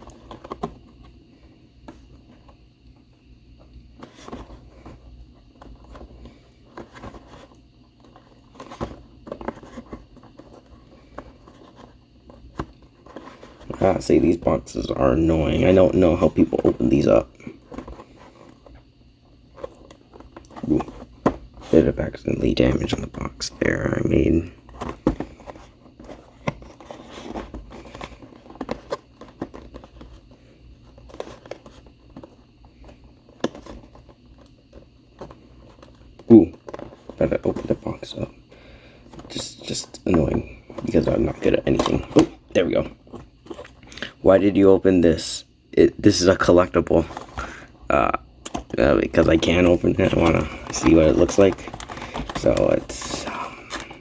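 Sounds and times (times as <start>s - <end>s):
box clicks and knocks: 19.6s - 21.8s, 24.7s - 30.1s, 49.4s - 54.0s
packaging crinkling: 48.5s - 54.0s
cardboard box scraping and rustling: 49.1s - 54.0s.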